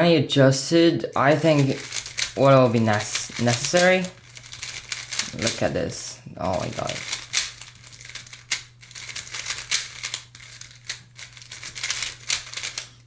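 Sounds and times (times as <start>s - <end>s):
faint steady hum: 0.0s - 13.0s
plastic puzzle cube clicking: 1.6s - 5.4s, 6.6s - 12.9s.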